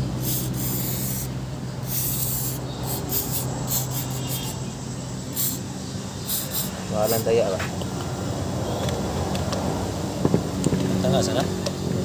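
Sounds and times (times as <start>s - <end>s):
steady low hum: 0.0s - 8.4s
short hissing scrapes: 0.2s - 4.7s, 5.3s - 7.3s.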